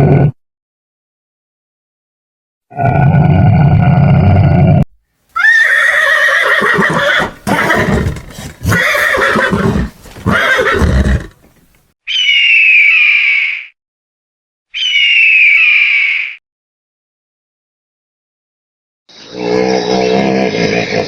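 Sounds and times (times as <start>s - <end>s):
horse neighing: 5.4s - 11.7s
high steady horse call: 5.4s - 11.8s.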